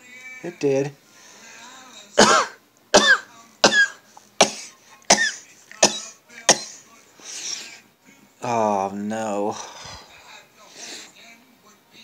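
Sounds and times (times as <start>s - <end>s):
sharp sneezes: 2.2s - 6.8s.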